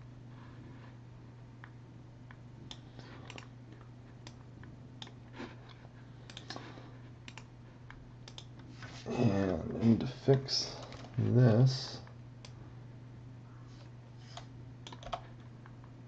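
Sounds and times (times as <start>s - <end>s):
low electrical hum: 0.0s - 16.0s
keyboard and mouse clicks: 1.6s - 4.4s, 6.3s - 7.5s, 8.2s - 8.6s, 14.3s - 15.4s.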